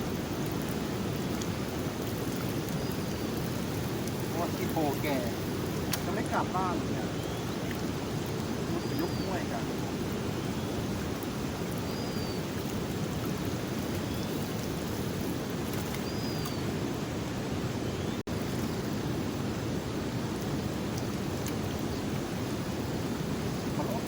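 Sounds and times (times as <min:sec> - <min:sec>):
rushing river: 0:00.0 - 0:17.3.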